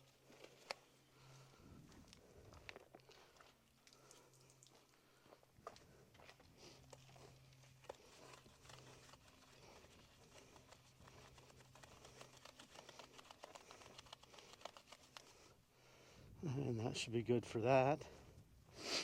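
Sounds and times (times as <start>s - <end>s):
brush scrubbing wheel rim: 7.0s - 15.4s.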